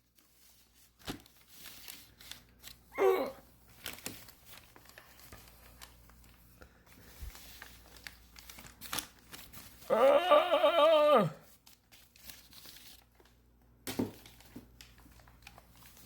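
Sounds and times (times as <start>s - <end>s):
person exclaiming: 2.9s - 3.4s, 9.9s - 11.4s.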